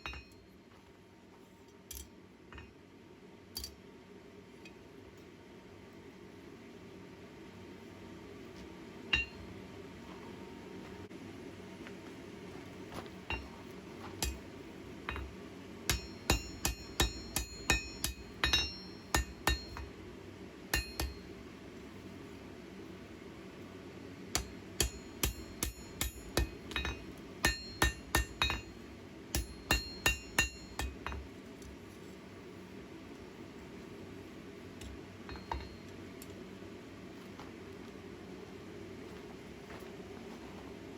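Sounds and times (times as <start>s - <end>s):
hammer striking steel on anvil: 0.0s - 0.4s, 1.9s - 2.8s, 9.1s - 9.5s, 13.3s - 13.5s, 14.2s - 14.5s, 15.1s - 15.3s, 15.9s - 20.0s, 20.7s - 21.4s, 24.3s - 31.3s, 34.8s - 35.9s
steady low hum: 0.0s - 40.9s.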